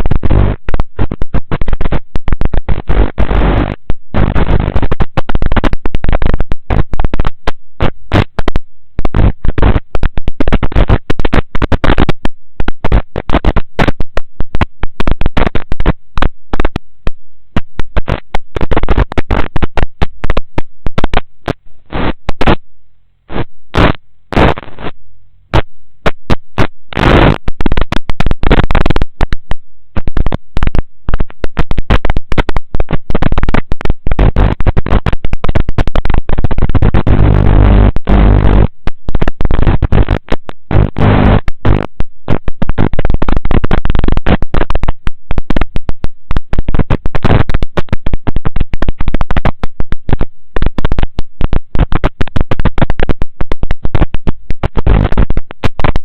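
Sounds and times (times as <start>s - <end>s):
loud distorted crackling noise: 0.0s - 56.0s
low pitched buzz: 36.6s - 42.4s.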